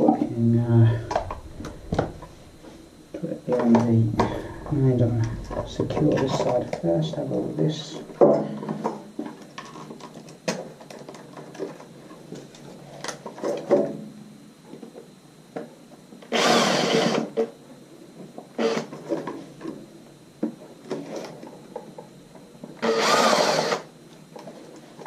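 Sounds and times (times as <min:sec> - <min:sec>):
cordless drill driving a screw: 0:16.3 - 0:17.2, 0:22.8 - 0:23.8.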